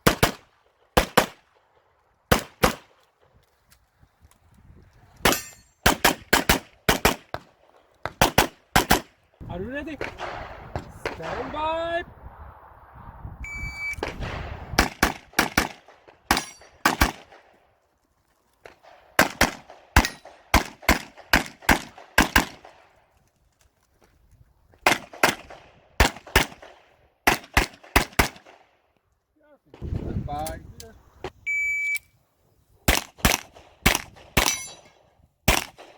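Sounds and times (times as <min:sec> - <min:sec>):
handgun firing rapid shots: 0:00.0 - 0:01.4, 0:02.3 - 0:02.9, 0:05.3 - 0:07.4, 0:08.0 - 0:09.1, 0:14.8 - 0:17.4, 0:19.2 - 0:22.8, 0:24.9 - 0:28.6, 0:32.9 - 0:34.8, 0:35.5 - 0:35.9
shot timer beep: 0:13.4 - 0:14.0, 0:31.5 - 0:32.1.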